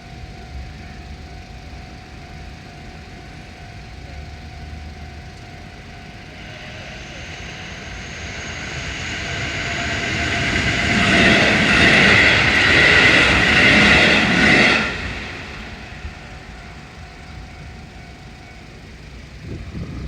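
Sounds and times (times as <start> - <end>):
electric train passing: 0.0 - 20.0.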